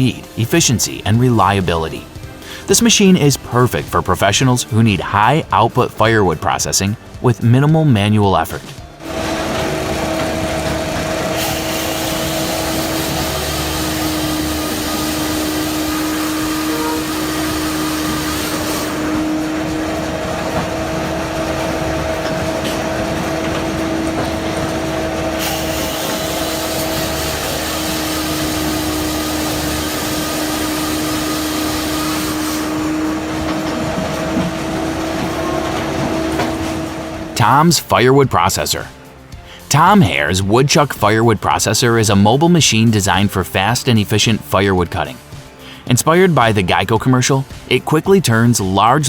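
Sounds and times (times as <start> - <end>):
machine humming with whine: 8.8 - 37.6.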